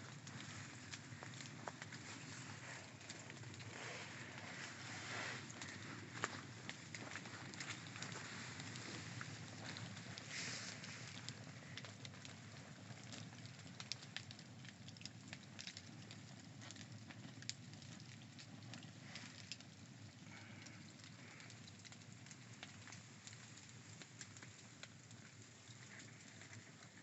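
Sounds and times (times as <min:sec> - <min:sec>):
campfire crackling and popping: 0:00.0 - 0:27.0
soft steady hiss: 0:00.0 - 0:27.0.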